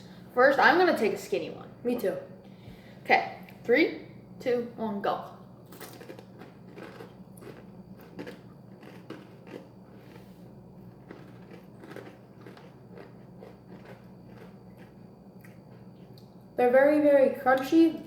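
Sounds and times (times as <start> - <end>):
chewing crispy chips: 5.7 - 16.4.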